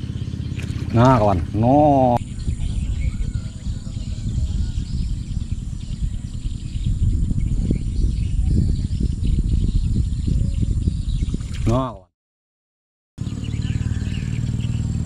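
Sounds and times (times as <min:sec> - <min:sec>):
high-pitched hum: 0:00.0 - 0:11.0
low rumble: 0:00.0 - 0:11.6.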